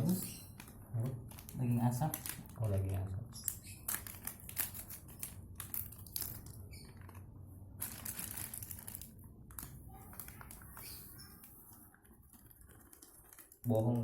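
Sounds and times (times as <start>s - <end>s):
crinkling and rustling: 0.0s - 14.0s.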